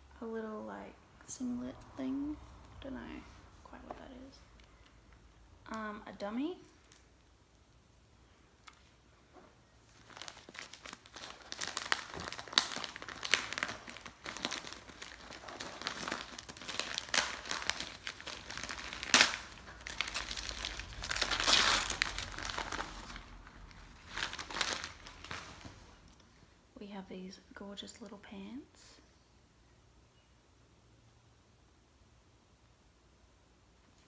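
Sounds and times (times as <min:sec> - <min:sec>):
packaging crinkling: 0:09.8 - 0:26.1.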